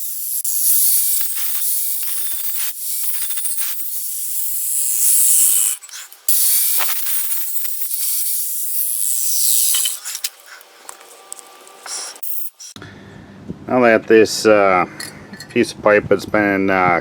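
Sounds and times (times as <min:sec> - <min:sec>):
power tool cutting exhaust pipe: 0:00.0 - 0:12.8.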